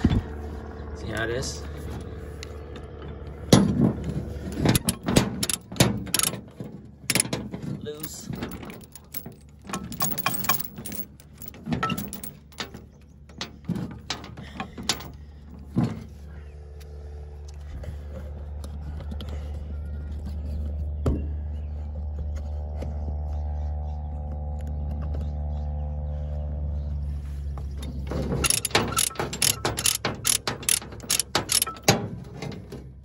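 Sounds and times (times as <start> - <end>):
engine hum: 0.0 - 33.0
steel chain clanking and rattling: 3.6 - 15.2, 28.1 - 32.7.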